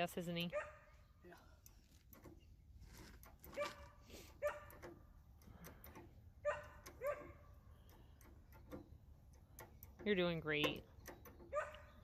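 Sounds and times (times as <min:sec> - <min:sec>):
dog barking: 0:00.5 - 0:00.9, 0:03.6 - 0:04.8, 0:06.4 - 0:07.5, 0:11.5 - 0:12.0
dog yipping: 0:03.6 - 0:04.8, 0:06.4 - 0:07.5, 0:11.5 - 0:12.0.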